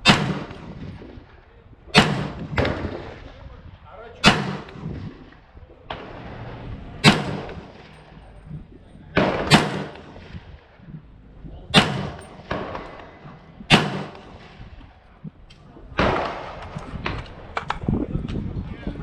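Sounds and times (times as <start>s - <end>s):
rifle shots: 0.0s - 3.4s, 4.2s - 6.4s, 7.0s - 8.4s, 9.1s - 10.8s, 11.7s - 15.2s, 16.0s - 17.7s.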